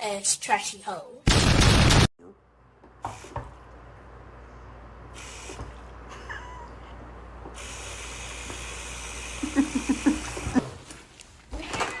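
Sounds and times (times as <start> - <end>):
background hiss: 7.5 - 11.1.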